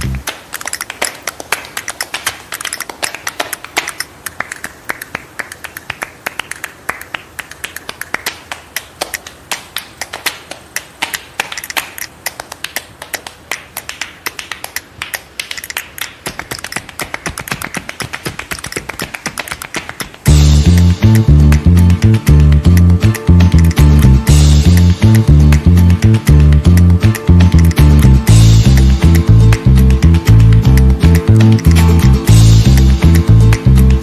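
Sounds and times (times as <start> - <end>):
rapid irregular clicking: 10.0 - 20.3.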